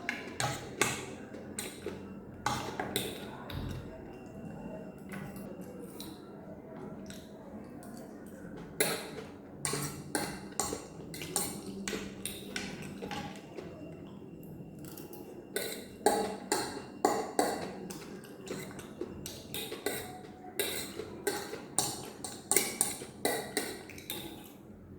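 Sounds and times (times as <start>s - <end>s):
cutlery scraping a plate: 8.8s - 13.3s, 15.6s - 24.6s.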